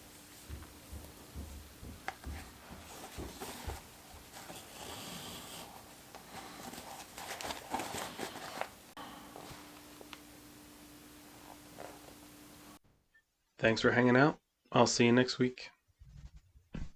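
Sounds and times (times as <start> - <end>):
handling rustling: 0.0 - 10.3
light taps and soft knocks: 0.3 - 4.4.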